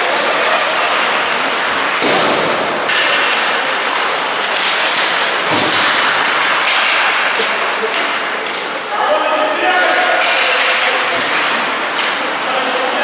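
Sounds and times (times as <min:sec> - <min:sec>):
skates scraping ice: 0:00.0 - 0:13.0
thud: 0:02.0 - 0:03.3, 0:05.4 - 0:06.9.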